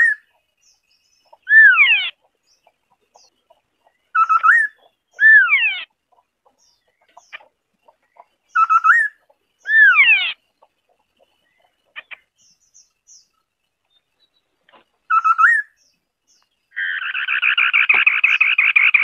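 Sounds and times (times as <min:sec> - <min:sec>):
bird song with whistle: 0:01.4 - 0:02.1, 0:04.1 - 0:05.8, 0:08.5 - 0:10.4, 0:15.1 - 0:15.9.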